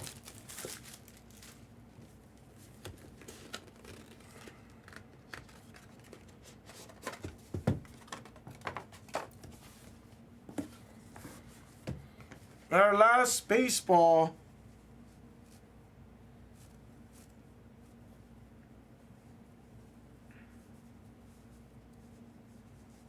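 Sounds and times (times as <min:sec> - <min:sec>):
packaging rustling and tearing: 0:00.0 - 0:01.7, 0:02.8 - 0:07.3.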